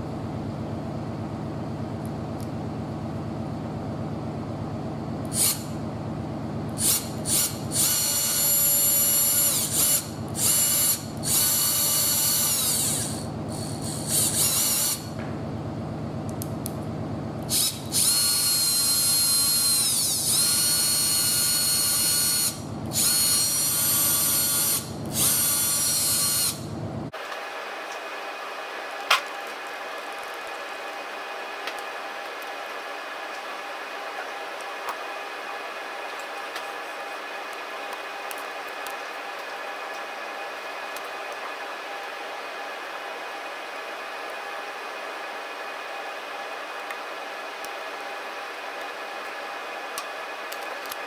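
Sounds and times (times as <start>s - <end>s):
impact driver motor whining: 5.3s - 5.7s, 6.8s - 15.2s, 17.5s - 26.6s.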